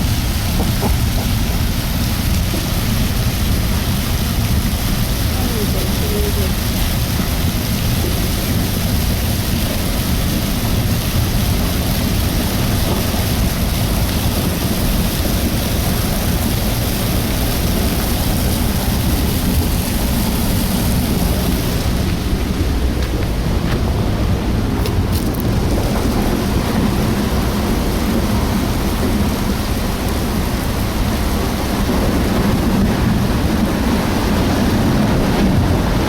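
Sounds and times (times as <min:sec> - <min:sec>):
debris flow rumbling: 0:00.0 - 0:36.0.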